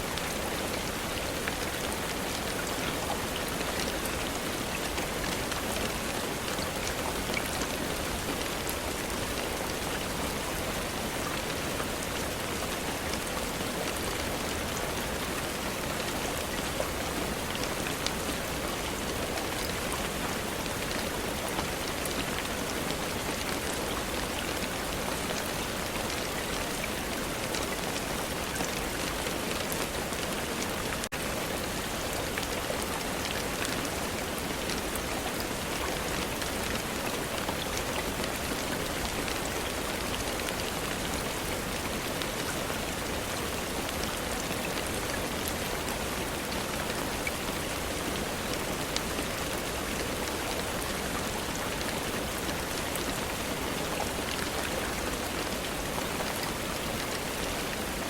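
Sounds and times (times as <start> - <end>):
dense rain falling: 0.0 - 58.0.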